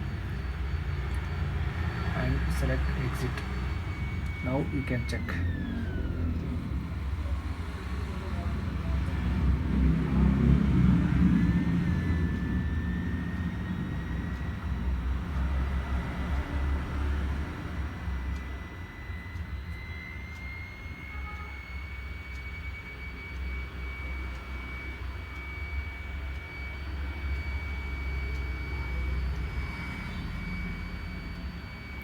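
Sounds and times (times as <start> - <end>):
steady low rumble: 0.0 - 20.5
laptop cooling fan whine: 0.0 - 32.0.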